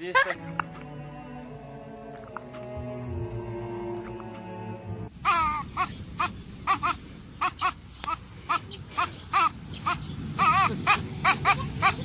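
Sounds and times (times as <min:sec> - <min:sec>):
music: 0:00.0 - 0:05.1
high-pitched crying calls: 0:05.2 - 0:12.0.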